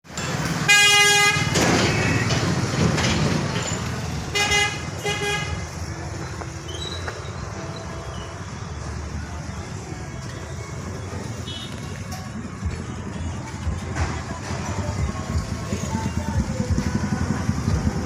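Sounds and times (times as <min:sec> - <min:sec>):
vehicle horn honking: 0:00.7 - 0:02.3, 0:04.3 - 0:05.7, 0:11.4 - 0:12.0.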